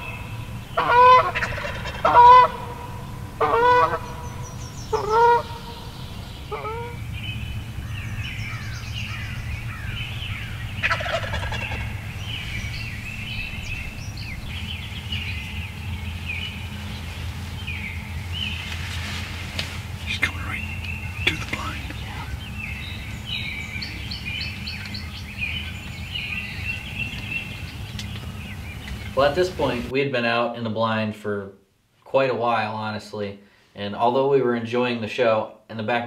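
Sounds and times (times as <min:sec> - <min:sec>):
turkey gobbling: 0:00.0 - 0:07.1, 0:08.4 - 0:13.7
soft high bird calls: 0:00.0 - 0:29.9.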